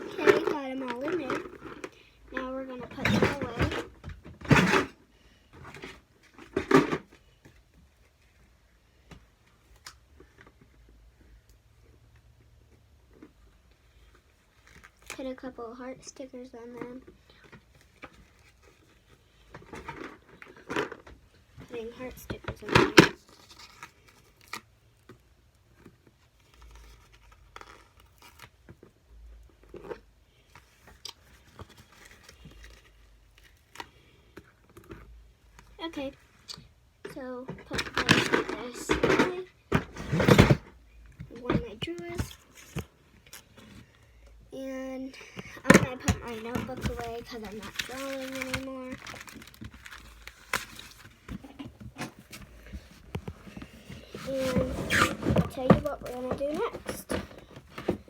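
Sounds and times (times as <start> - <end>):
plastic markers rattling: 45.6 - 58.0
stickers peeling and rustling: 45.6 - 58.0.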